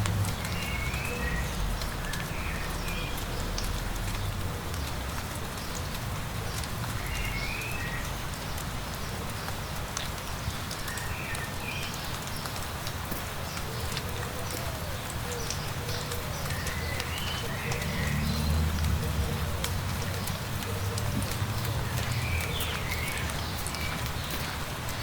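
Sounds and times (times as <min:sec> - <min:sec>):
light rain: 0:00.0 - 0:25.0
songbird chirping: 0:13.6 - 0:25.0.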